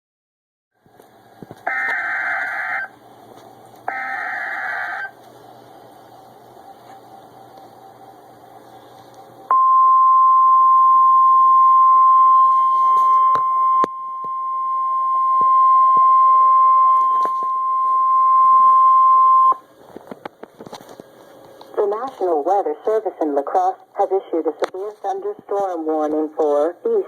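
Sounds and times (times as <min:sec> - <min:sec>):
steady warning alarm tone: 0:01.6 - 0:03.0, 0:03.9 - 0:05.2, 0:09.5 - 0:19.6
faint radio hiss: 0:04.6 - 0:09.5, 0:19.6 - 0:27.0.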